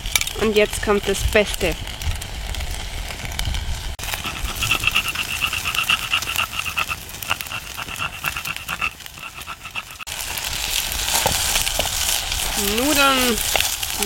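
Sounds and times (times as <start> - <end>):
campfire crackling: 0.0 - 14.0
rapid pulsed animal call: 4.0 - 10.1.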